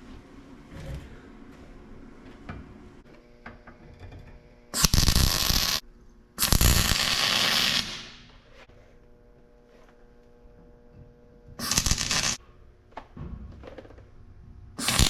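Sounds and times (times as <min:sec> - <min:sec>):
electric welding hiss: 0:04.8 - 0:05.8, 0:06.4 - 0:08.3, 0:11.6 - 0:12.4, 0:14.8 - 0:15.0.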